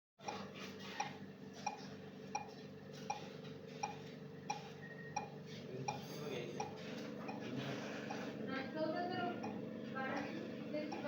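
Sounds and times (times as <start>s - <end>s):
ventilator machine hum: 0.2s - 11.0s.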